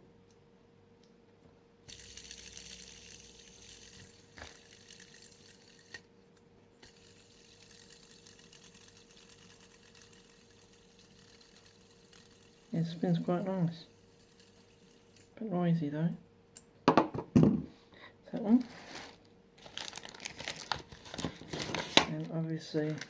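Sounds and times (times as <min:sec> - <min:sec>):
fidget spinner whirring: 0:01.9 - 0:06.1, 0:06.8 - 0:15.9.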